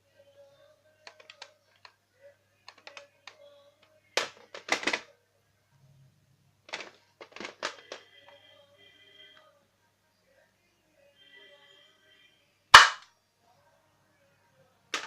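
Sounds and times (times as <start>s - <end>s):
loud metallic shotgun clacks: 12.8s - 13.0s.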